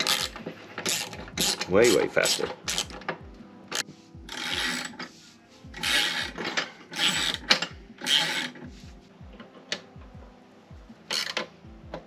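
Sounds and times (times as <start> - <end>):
ratcheting spanner clicking: 0.0 - 5.0, 5.8 - 8.6, 11.1 - 11.5.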